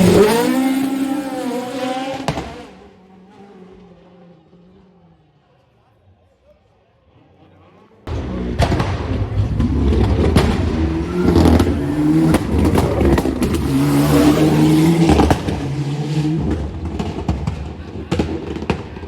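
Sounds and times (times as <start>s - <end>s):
rally car engine revving: 0.0s - 5.5s, 7.1s - 19.0s
exhaust cracks: 8.1s - 19.0s.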